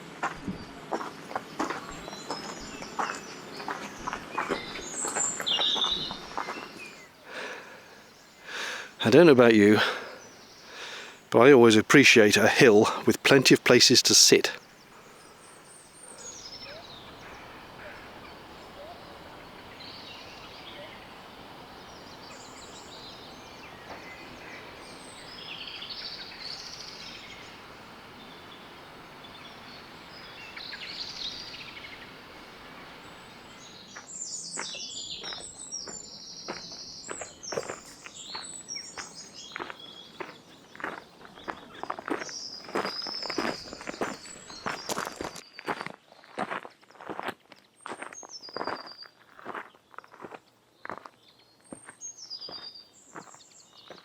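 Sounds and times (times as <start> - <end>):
footsteps crunching on path: 0.0 - 7.8, 33.6 - 54.0
outdoor hiss: 0.0 - 40.3
birds chirping and singing: 0.2 - 32.2, 32.9 - 45.4.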